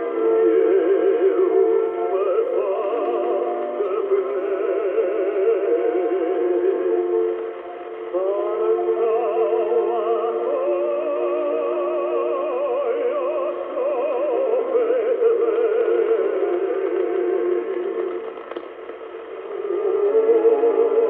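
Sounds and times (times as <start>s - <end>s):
singing voice with wide vibrato: 0.0s - 18.2s, 19.3s - 21.0s
sustained accompaniment: 0.0s - 21.0s.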